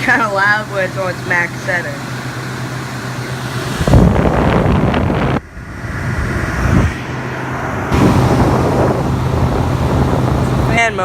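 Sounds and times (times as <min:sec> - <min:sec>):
air conditioner hum: 0:00.0 - 0:11.0
airflow buffeting microphone: 0:02.0 - 0:11.0
air rushing: 0:03.4 - 0:10.8.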